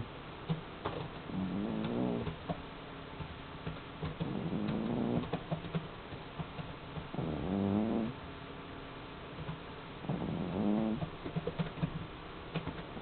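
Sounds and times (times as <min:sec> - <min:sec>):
cat snoring: 0:01.3 - 0:02.4, 0:04.2 - 0:05.4, 0:07.1 - 0:08.2, 0:10.0 - 0:11.1.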